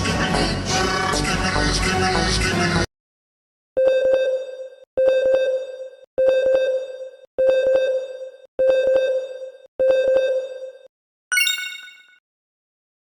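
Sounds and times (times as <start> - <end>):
ringing electronic ding: 11.3 - 12.2.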